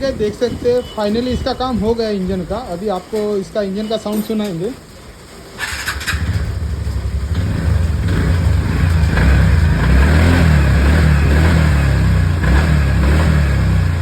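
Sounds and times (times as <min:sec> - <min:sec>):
scooter engine starting and running: 0:05.4 - 0:14.0.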